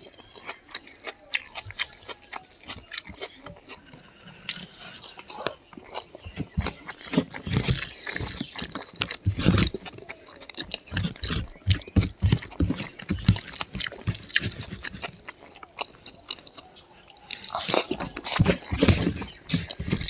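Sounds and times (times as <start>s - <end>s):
wet chewing and mouth smacks: 0.0s - 20.0s.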